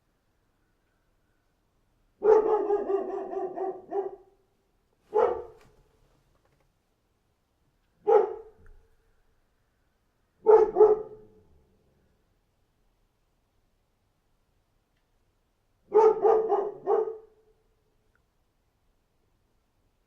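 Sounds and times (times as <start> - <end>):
dog barking: 2.2 - 4.4, 5.1 - 5.8, 8.0 - 8.6, 10.4 - 11.4, 15.9 - 17.5.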